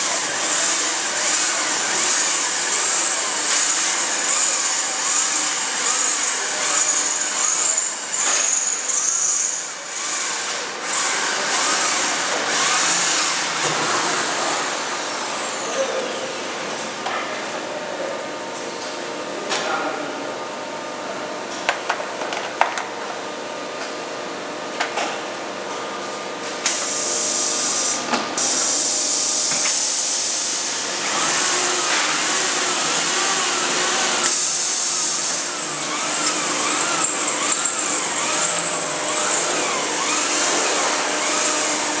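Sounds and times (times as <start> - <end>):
loud steady hiss: 26.6 - 31.0.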